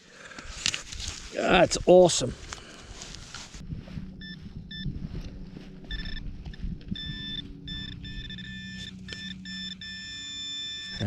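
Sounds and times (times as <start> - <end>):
steady low drone: 2.3 - 11.0
metal detector beeping: 4.2 - 11.0.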